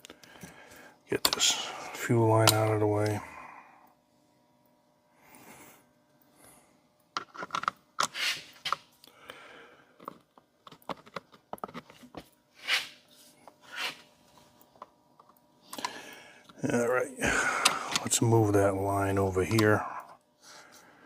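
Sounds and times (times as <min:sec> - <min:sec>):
plastic parts clicking and tapping: 0:07.2 - 0:08.1, 0:10.0 - 0:12.2
short rubbing swishes: 0:12.6 - 0:13.0.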